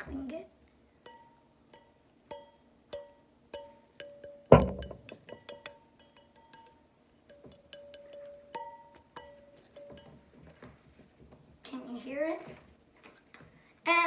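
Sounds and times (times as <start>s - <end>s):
metal air horn bell clinking: 1.1s - 10.1s
loud knock: 4.5s - 5.1s.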